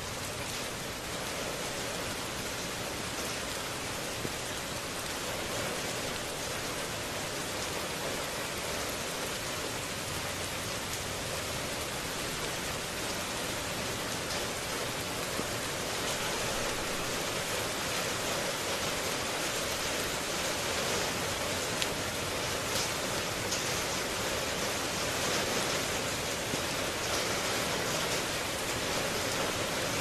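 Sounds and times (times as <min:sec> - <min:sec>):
heavy rain: 0:00.0 - 0:30.0
raindrop ticks: 0:21.7 - 0:24.8.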